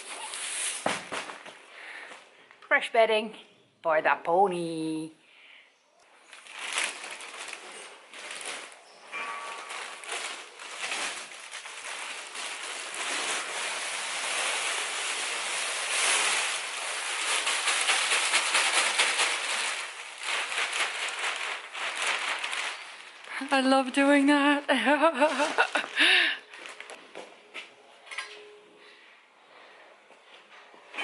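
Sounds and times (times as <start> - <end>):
bedding rustling and scattering: 0.0 - 1.7, 6.3 - 24.3, 24.9 - 27.0.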